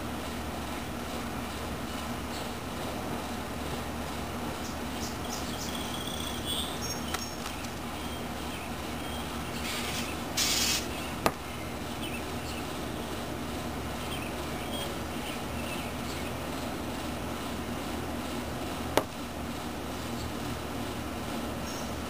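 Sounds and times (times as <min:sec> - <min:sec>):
background hum: 0:00.0 - 0:22.0
high bird chirps: 0:04.6 - 0:12.7
wings fluttering: 0:06.8 - 0:08.0.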